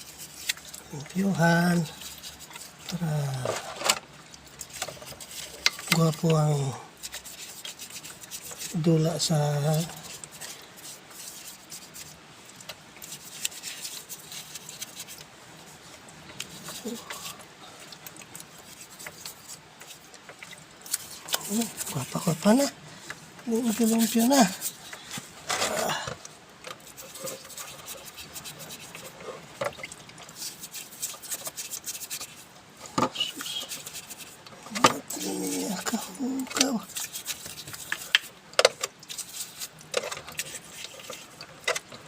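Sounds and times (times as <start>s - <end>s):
cloth rubbing on a motorcycle: 0.0s - 3.8s, 4.7s - 17.4s, 18.4s - 26.0s, 26.8s - 29.6s, 30.3s - 38.4s
cloth rubbing scratchily: 23.5s - 24.9s, 26.8s - 29.4s.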